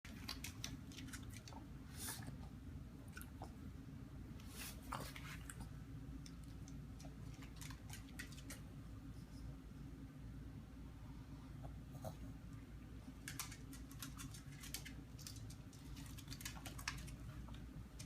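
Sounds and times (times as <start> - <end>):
low steady hum: 0.0 - 18.0
dog chewing and nibbling: 0.1 - 2.4, 4.9 - 8.7.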